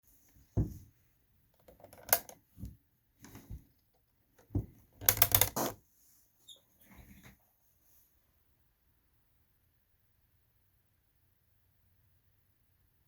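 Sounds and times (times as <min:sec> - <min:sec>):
clock radio being handled: 0:01.6 - 0:02.4, 0:05.0 - 0:05.6.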